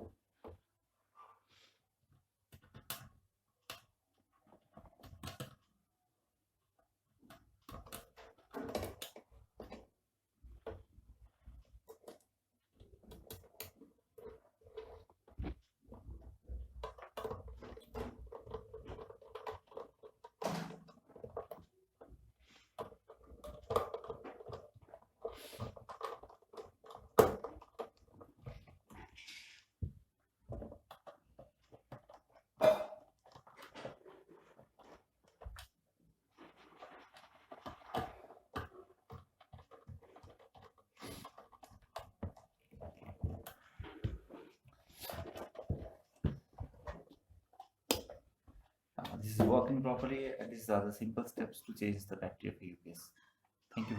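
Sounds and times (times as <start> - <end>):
small clicks and taps on plastic: 2.4 - 5.8, 45.2 - 49.2.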